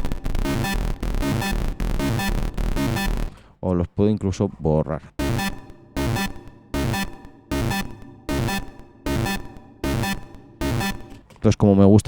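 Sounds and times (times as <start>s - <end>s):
distorted synth hit: 0.0s - 3.3s, 5.2s - 11.2s.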